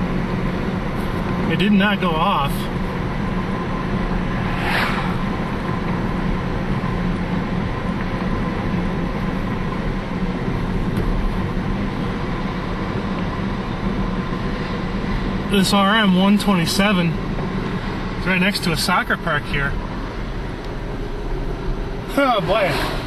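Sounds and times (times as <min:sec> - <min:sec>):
vehicle running hum: 0:00.0 - 0:23.0
brief rushing sound: 0:04.2 - 0:05.8.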